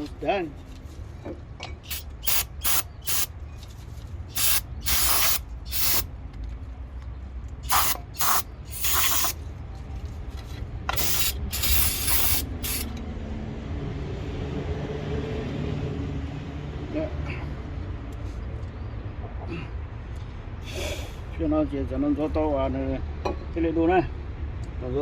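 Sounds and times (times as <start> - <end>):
aerosol can spraying: 1.9 - 3.3, 4.3 - 6.0, 7.6 - 9.4, 11.0 - 12.9.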